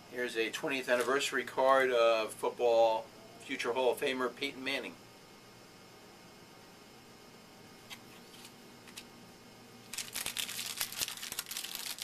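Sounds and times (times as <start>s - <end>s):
wrapper torn open and crinkled: 9.9s - 12.0s.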